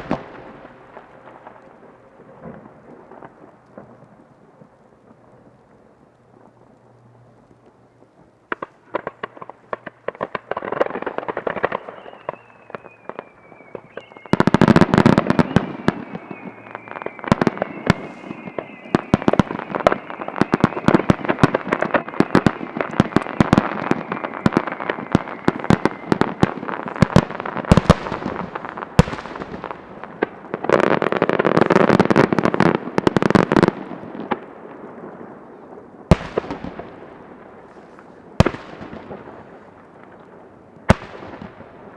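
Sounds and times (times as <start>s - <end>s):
fireworks crackling and booming: 0.0s - 41.9s
whistling firework shell: 11.4s - 28.3s.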